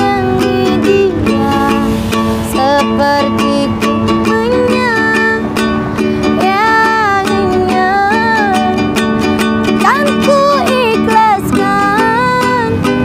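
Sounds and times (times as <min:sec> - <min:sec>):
gliding melody line: 0:00.0 - 0:13.0
ukulele and guitar strumming: 0:00.0 - 0:13.0.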